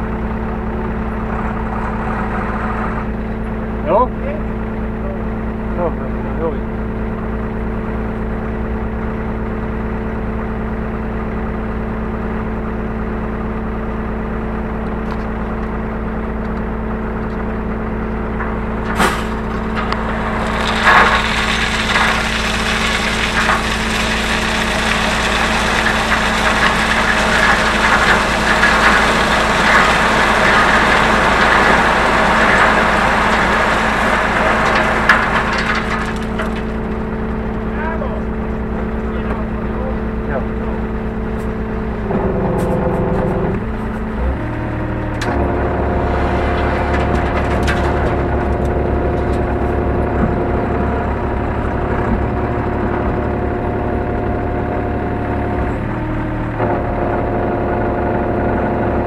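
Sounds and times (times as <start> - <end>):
diesel engine running: 0.0 - 59.0
rushing rattling noise with knocks: 18.2 - 37.3, 45.2 - 54.8.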